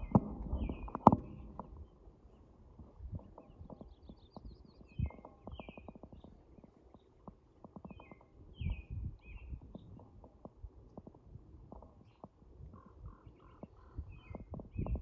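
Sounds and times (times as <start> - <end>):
low rumbling thumps and clicks: 0.0 - 2.0
songbirds singing: 0.0 - 15.0.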